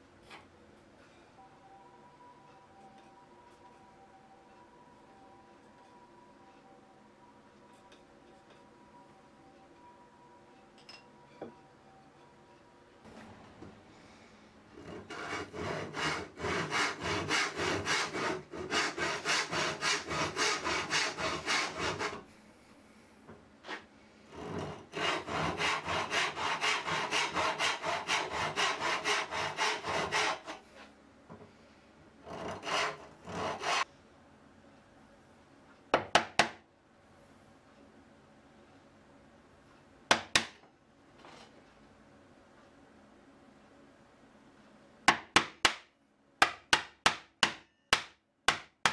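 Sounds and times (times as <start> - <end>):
hand saw cutting wood: 14.8 - 22.2, 24.3 - 30.6, 32.2 - 33.8.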